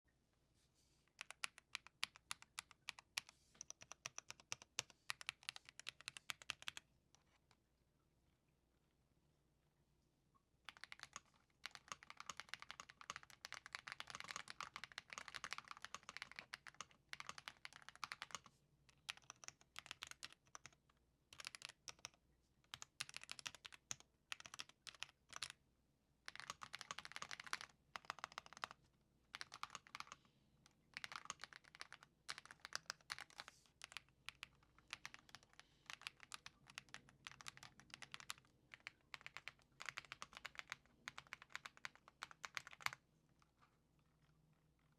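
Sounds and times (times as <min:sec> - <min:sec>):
mechanical keyboard typing: 0:01.1 - 0:07.4, 0:10.7 - 0:25.6, 0:26.3 - 0:43.0.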